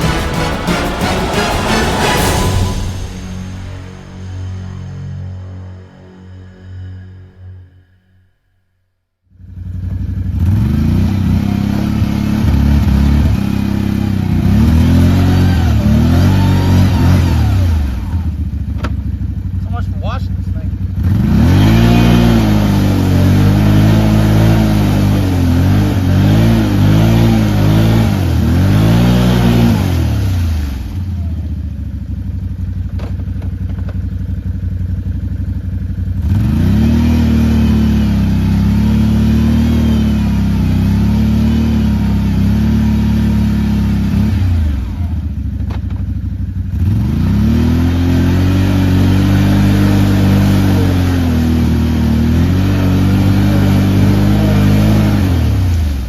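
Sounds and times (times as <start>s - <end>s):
atv engine revving: 9.5s - 31.5s, 33.5s - 56.0s.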